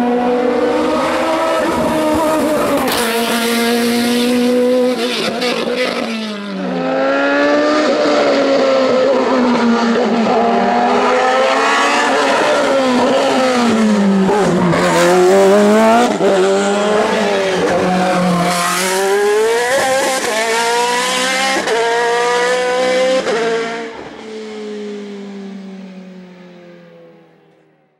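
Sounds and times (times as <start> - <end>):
race car engine revving: 0.0 - 27.0.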